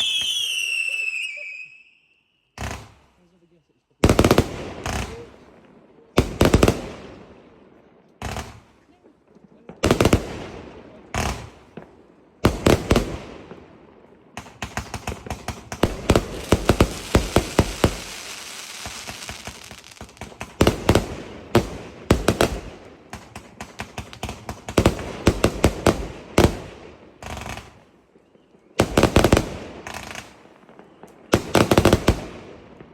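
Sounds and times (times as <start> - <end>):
firework bangs: 0.0 - 1.8, 2.5 - 3.2, 14.3 - 27.9, 28.7 - 32.9.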